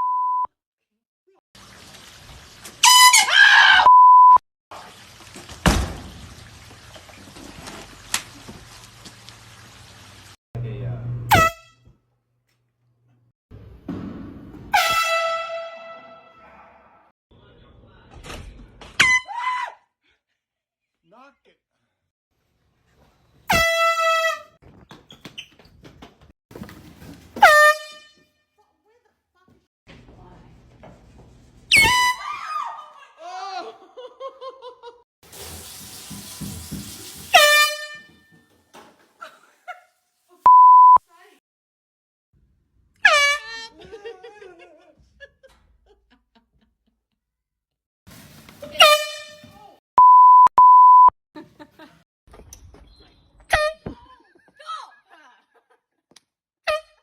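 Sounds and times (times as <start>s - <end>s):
censor bleep: 0.0s - 0.5s, 3.9s - 4.4s, 40.5s - 41.0s, 50.0s - 51.1s
air horn blasts: 2.8s - 3.3s, 11.3s - 11.9s, 14.8s - 16.4s, 27.4s - 28.2s, 48.8s - 49.6s
loud scream: 3.1s - 3.9s, 32.0s - 33.0s.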